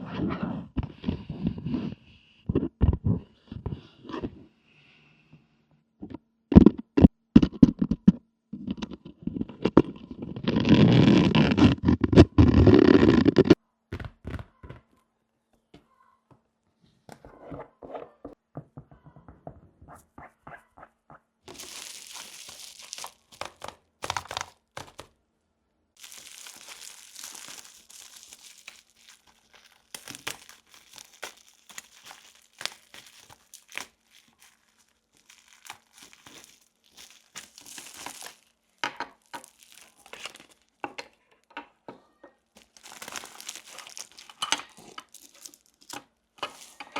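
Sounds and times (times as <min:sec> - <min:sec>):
plastic packaging crinkling: 0:21.5 - 0:25.1, 0:26.0 - 0:41.5, 0:42.5 - 0:46.9.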